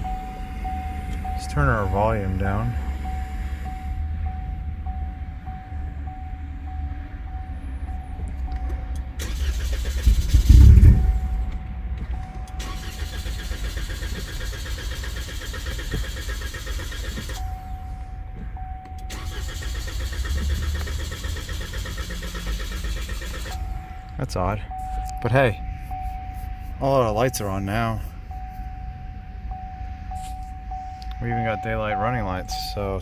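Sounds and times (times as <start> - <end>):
low rumble: 3.9 - 12.6
starter cranking engine: 9.2 - 11.4, 12.5 - 17.5, 19.1 - 23.6
engine surge: 9.2 - 24.1.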